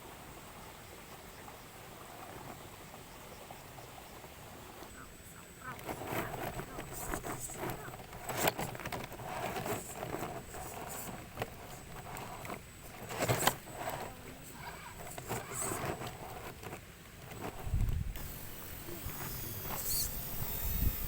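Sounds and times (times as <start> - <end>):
toy car running: 5.6 - 21.0.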